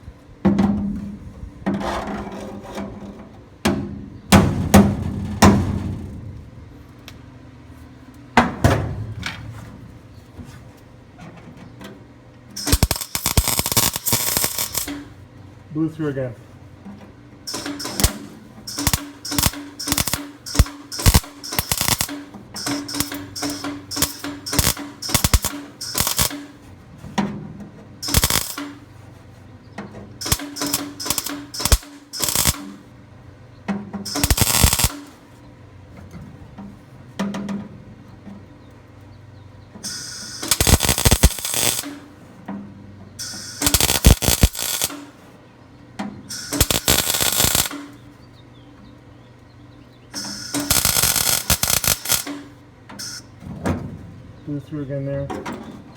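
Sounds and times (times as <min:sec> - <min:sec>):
welder crackling bursts: 0:12.6 - 0:15.2, 0:17.5 - 0:26.7, 0:28.0 - 0:28.9, 0:30.2 - 0:32.9, 0:34.1 - 0:35.3, 0:39.8 - 0:42.2, 0:43.2 - 0:45.3, 0:46.3 - 0:48.1, 0:50.1 - 0:53.3.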